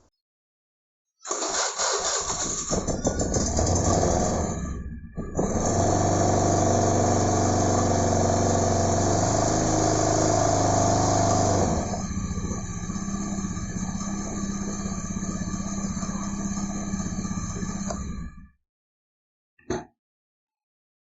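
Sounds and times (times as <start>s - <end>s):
scooter engine running: 2.2s - 18.5s.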